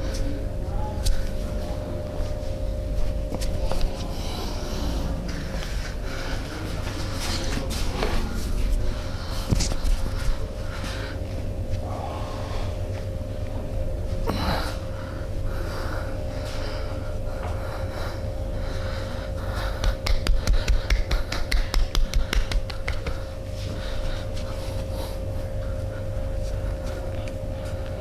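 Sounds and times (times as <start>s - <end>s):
faint hum: 0.0s - 28.0s
breathing: 8.9s - 13.0s, 14.3s - 21.4s, 22.0s - 28.0s.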